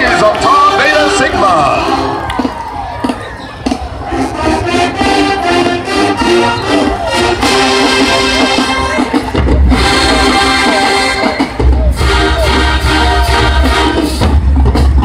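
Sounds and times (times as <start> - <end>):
marching band brass: 0.0 - 15.0.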